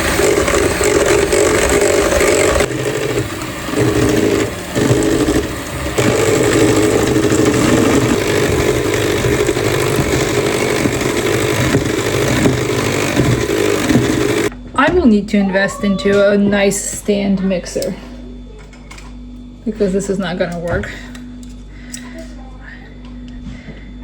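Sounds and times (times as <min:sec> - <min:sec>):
electric hand mixer whirring: 0:00.0 - 0:14.5.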